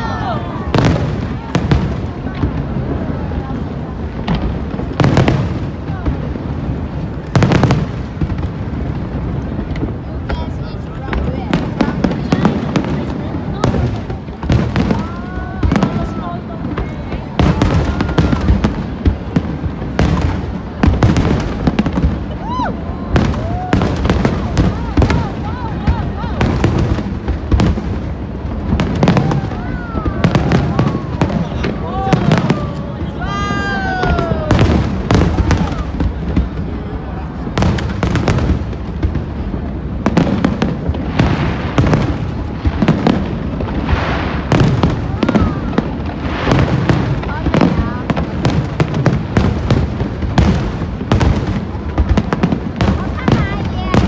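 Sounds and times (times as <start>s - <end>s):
fireworks crackling: 0.0s - 54.0s
fireworks sharp bangs: 0.0s - 54.0s.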